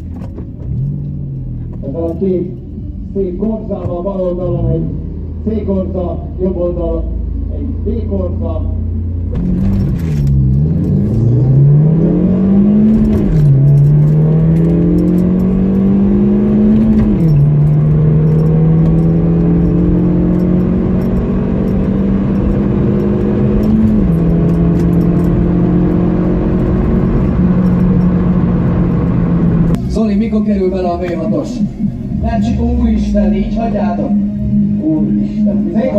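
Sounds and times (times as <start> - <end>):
car engine accelerating through gears: 7.1 - 30.0, 31.0 - 35.9.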